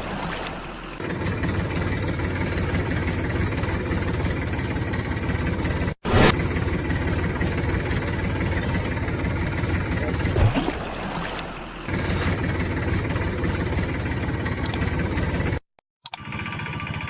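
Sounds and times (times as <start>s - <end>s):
diesel engine idling: 0.5s - 17.0s
short rising sweep: 6.0s - 6.4s.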